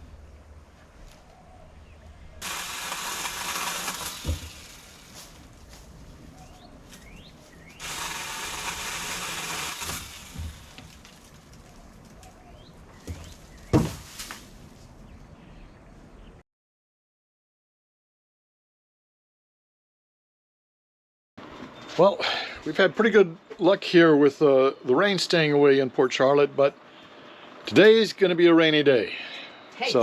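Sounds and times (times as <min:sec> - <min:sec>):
power saw cutting tree limbs: 0:02.4 - 0:05.6, 0:07.8 - 0:11.7, 0:13.1 - 0:14.5
sharp thuds: 0:03.2 - 0:05.4, 0:09.3 - 0:11.3, 0:13.0 - 0:14.6.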